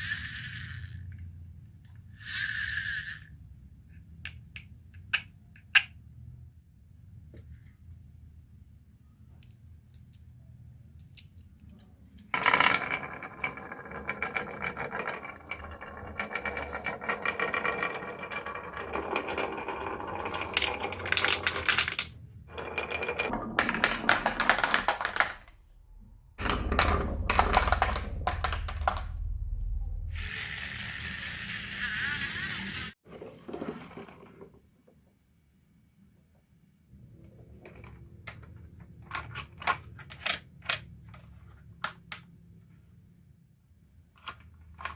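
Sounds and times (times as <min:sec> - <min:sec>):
marbles rolling on wooden track: 0:00.0 - 0:01.4, 0:02.0 - 0:03.6, 0:11.0 - 0:25.5, 0:26.4 - 0:29.2, 0:30.2 - 0:34.6.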